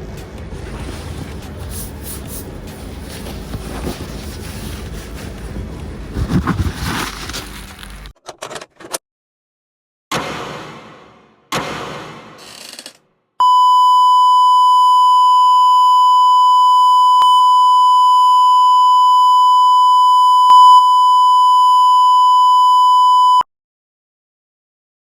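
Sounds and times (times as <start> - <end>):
steady electronic beep: 13.4 - 23.4.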